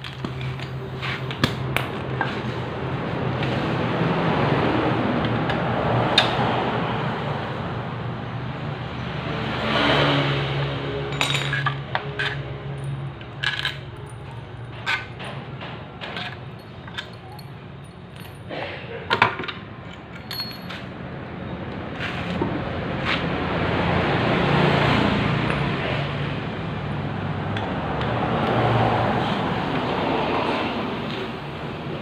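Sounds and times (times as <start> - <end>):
sharp metallic clinks and taps: 11.1 - 18.5, 19.2 - 21.0.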